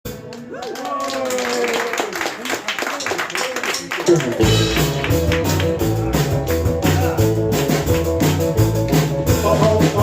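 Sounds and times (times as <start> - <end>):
steady drum beat: 4.1 - 10.0
guitar chords: 4.4 - 10.0
walking bass line: 4.4 - 10.0.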